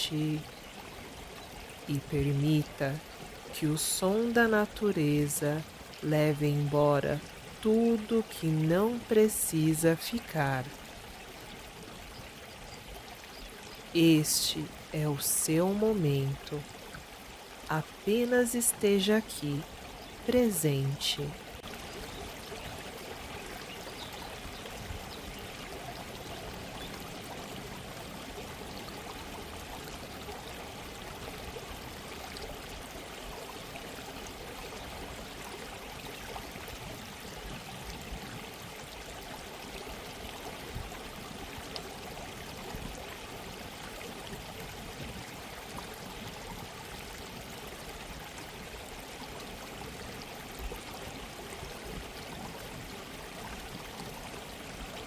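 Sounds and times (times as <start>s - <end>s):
stream babbling: 0.0s - 55.0s.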